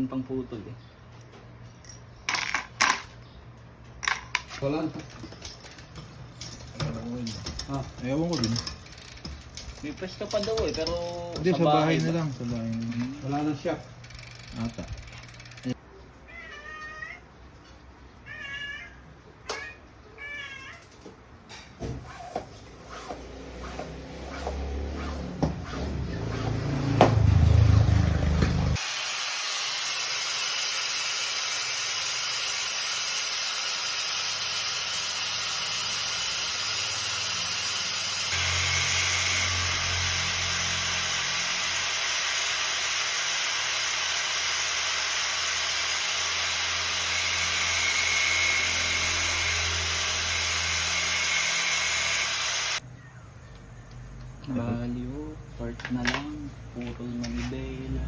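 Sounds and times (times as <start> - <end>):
cat meowing: 16.2 - 17.4, 18.2 - 20.9.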